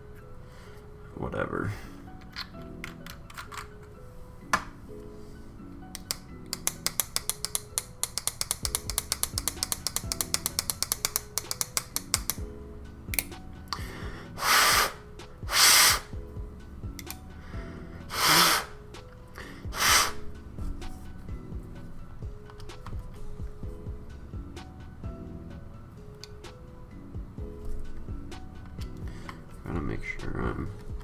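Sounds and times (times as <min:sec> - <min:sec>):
small metallic clicks: 0:05.9 - 0:12.4
loud hissing bursts: 0:14.4 - 0:16.1, 0:18.1 - 0:18.8, 0:19.7 - 0:20.2.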